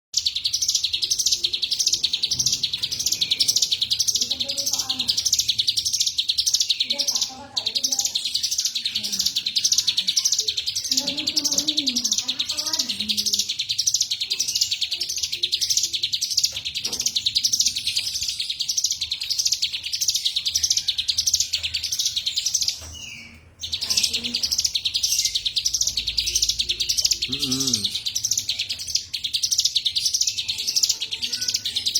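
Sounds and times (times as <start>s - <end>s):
bird singing high trill: 17.4s - 31.9s.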